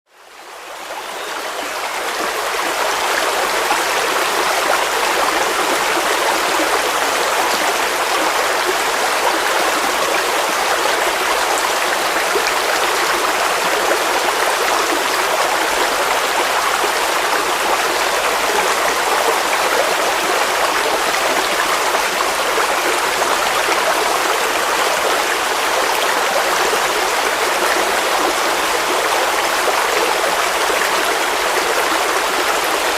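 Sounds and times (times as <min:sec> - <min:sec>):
waterfall rushing: 0:00.8 - 0:32.9.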